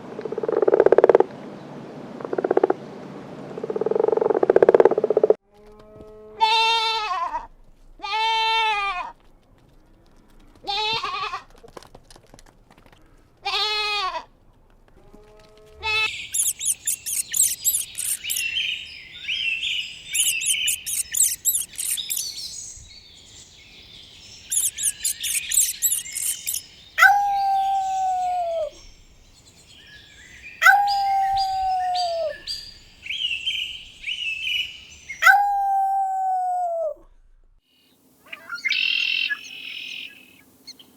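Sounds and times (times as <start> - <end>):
animal bleating: 6.3 - 7.4, 8.0 - 9.1, 13.4 - 14.2
rapid high bird chirping: 16.1 - 35.5
long calls sliding down in pitch: 16.4 - 18.6, 20.1 - 22.3, 24.5 - 28.6.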